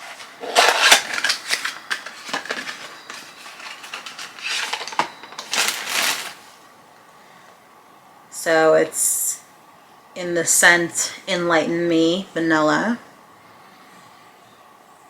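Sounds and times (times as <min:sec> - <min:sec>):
packaging rustling and crinkling: 0:00.0 - 0:06.6.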